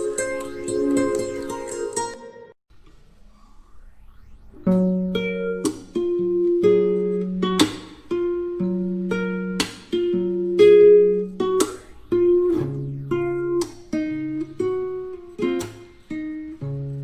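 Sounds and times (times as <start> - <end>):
strummed guitar chords: 4.6 - 17.0.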